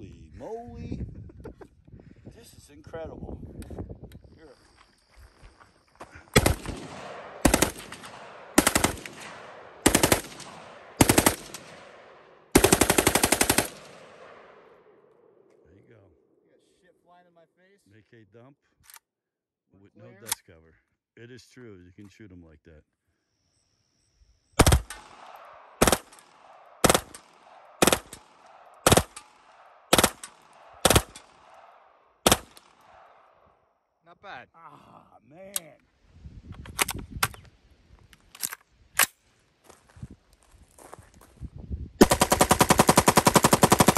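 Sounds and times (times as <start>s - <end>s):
ringing gunshot echo: 6.4s - 12.2s, 24.6s - 33.1s
automatic gunfire bursts: 6.4s - 14.5s, 24.6s - 29.3s, 29.9s - 32.7s, 42.0s - 43.9s.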